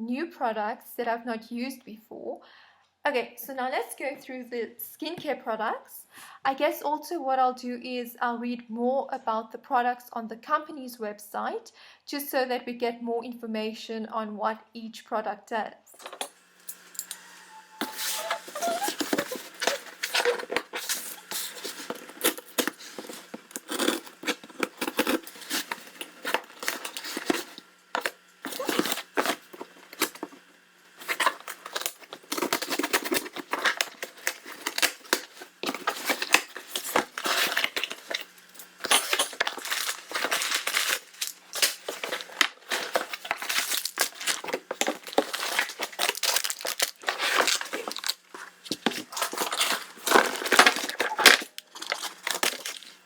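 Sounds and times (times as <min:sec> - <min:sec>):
packaging crinkling and tearing: 0:16.0 - 0:53.0.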